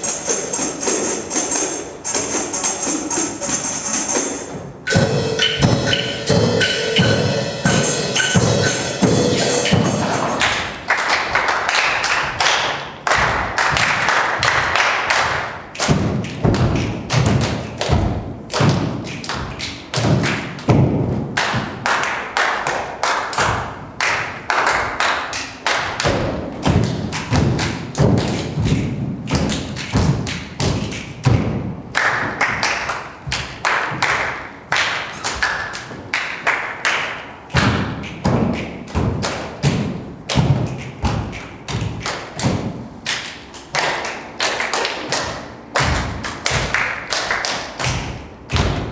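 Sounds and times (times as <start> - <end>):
body percussion thumps and taps: 13.1 - 22.0, 24.8 - 36.1, 37.5 - 43.1, 45.0 - 47.2, 47.8 - 48.9.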